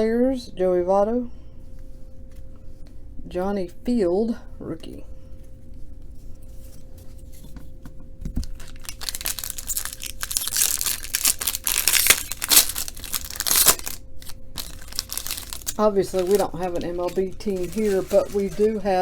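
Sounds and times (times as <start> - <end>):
wrapper crinkling and tearing: 8.4 - 19.0.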